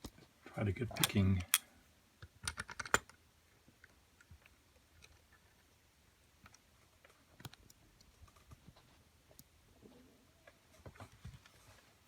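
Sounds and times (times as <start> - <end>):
padlock and metal tools clicking: 1.0 - 1.7, 2.4 - 3.2.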